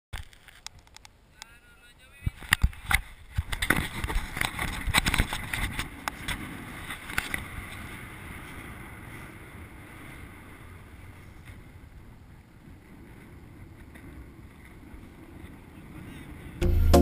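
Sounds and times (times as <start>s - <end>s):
wind on microphone: 2.2s - 16.6s.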